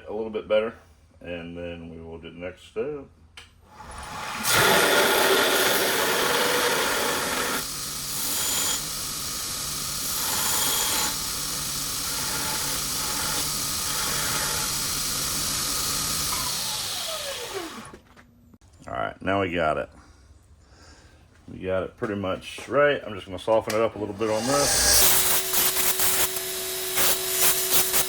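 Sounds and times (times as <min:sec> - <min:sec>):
steel grinding against belt: 0:03.8 - 0:17.9, 0:24.2 - 0:28.0
belt grinder motor running: 0:03.8 - 0:18.0, 0:24.2 - 0:28.0.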